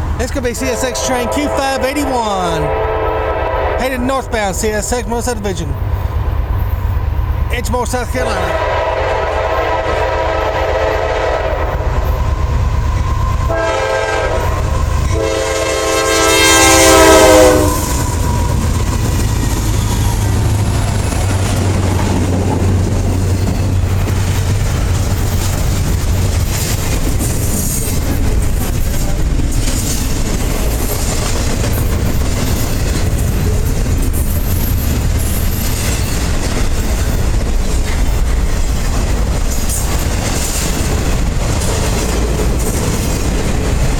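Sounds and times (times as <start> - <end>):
locomotive air horn: 2.6 - 3.9, 8.4 - 11.8, 13.5 - 18.6
train wheels clickety-clack: 17.3 - 43.9.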